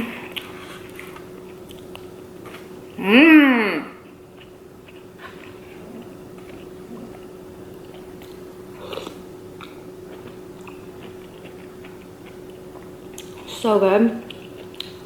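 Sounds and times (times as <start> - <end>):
person chewing crunchy food: 4.0 - 13.5, 14.2 - 15.0.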